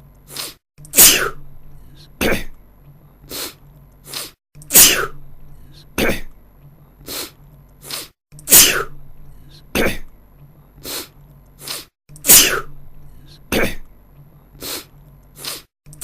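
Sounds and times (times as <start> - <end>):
man sneezing: 1.0 - 1.4, 2.2 - 2.5, 4.7 - 5.2, 6.0 - 6.3, 8.0 - 8.9, 9.7 - 10.0, 12.3 - 12.7, 13.5 - 13.8.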